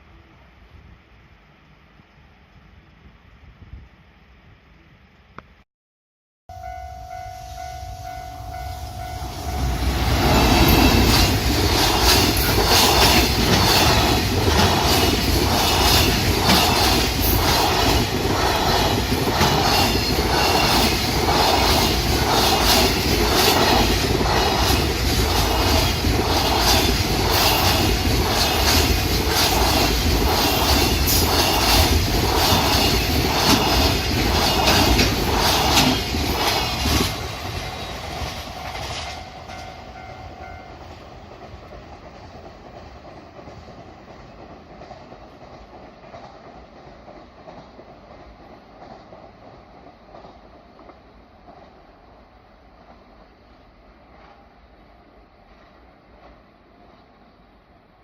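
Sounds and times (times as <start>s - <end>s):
train wheels clattering over rail joints: 10.1s - 39.7s.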